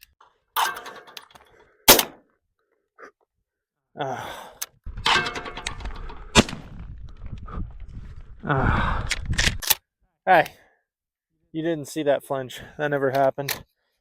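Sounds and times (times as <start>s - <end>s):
shotgun shots: 1.9s - 2.2s, 6.3s - 6.8s.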